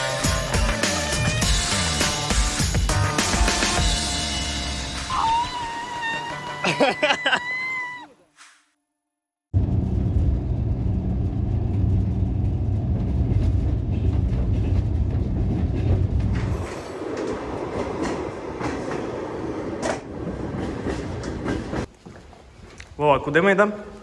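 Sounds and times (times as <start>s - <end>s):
train rumbling on rails: 9.6s - 21.9s.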